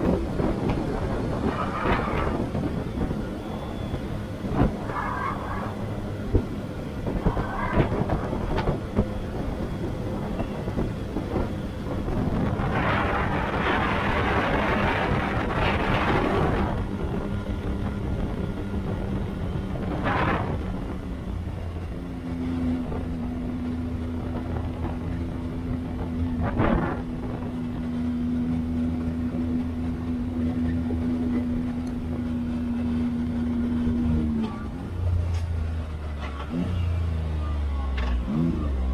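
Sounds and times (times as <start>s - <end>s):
vehicle engine running: 0.0s - 38.9s.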